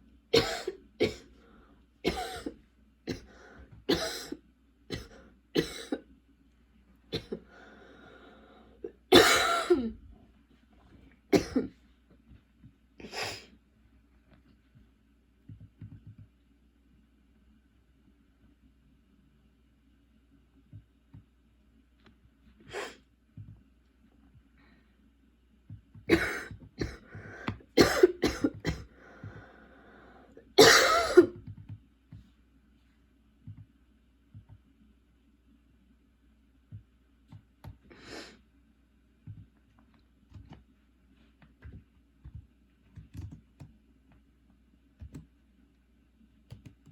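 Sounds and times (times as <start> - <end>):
girl coughing: 0.4 - 1.3, 2.0 - 3.3, 3.9 - 6.0, 7.1 - 7.4, 9.1 - 10.0, 11.3 - 11.7, 26.1 - 27.1, 27.8 - 28.9, 30.6 - 31.4
girl breathing: 7.4 - 8.8, 27.0 - 27.6, 28.9 - 30.4.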